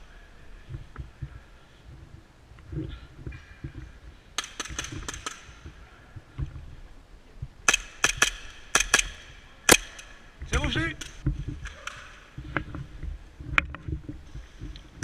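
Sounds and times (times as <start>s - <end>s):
airsoft pistol shots: 7.7s - 10.0s.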